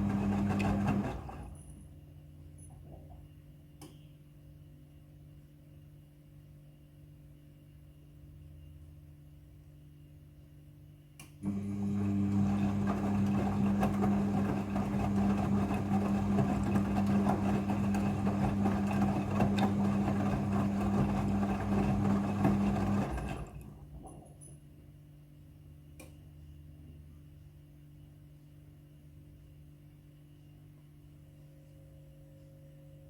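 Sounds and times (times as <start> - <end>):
water noise in washing machine: 0.0 - 1.6, 11.4 - 24.4
washing machine motor hum: 0.0 - 1.8, 11.4 - 24.6.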